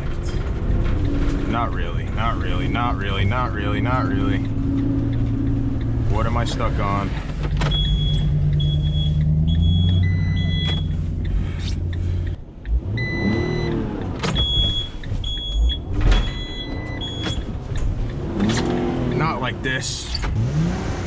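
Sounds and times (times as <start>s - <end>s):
van engine revving: 0.0s - 21.0s
quick warning beeps: 7.7s - 13.8s, 14.4s - 17.5s.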